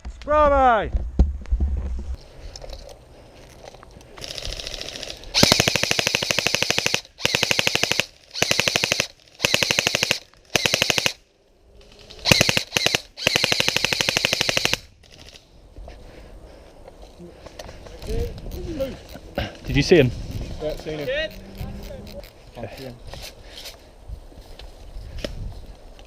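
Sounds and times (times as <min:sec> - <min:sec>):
airsoft rifle firing bursts: 0:04.5 - 0:11.2, 0:12.2 - 0:14.9.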